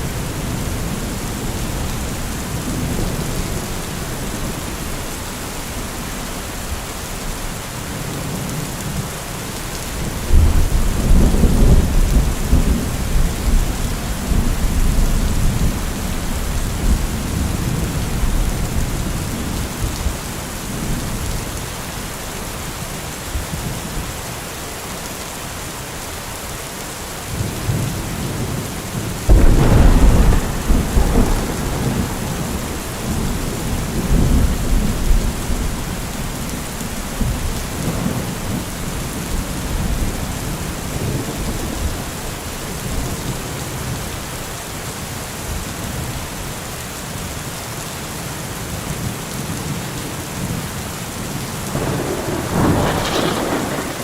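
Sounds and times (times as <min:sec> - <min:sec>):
steady rain: 0:00.0 - 0:54.0
rolling thunder: 0:10.0 - 0:20.2, 0:27.7 - 0:43.3, 0:51.6 - 0:54.0.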